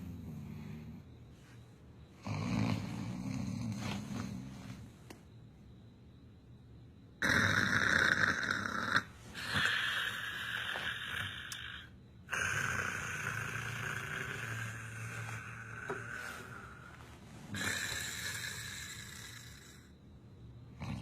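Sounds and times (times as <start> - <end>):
person snoring: 2.2 - 4.9, 7.2 - 20.0, 20.8 - 21.0.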